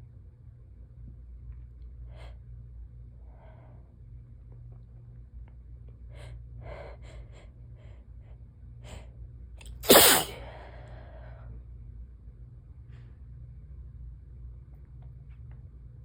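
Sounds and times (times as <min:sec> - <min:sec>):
person gasping breaths: 0:06.1 - 0:08.2
person sneezing: 0:09.7 - 0:10.5.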